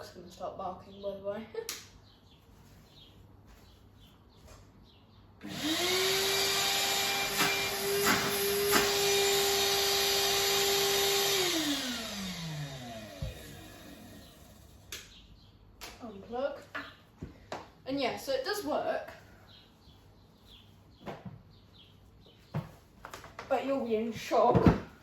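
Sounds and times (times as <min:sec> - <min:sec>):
wet vacuum motor whining: 0:05.4 - 0:14.8.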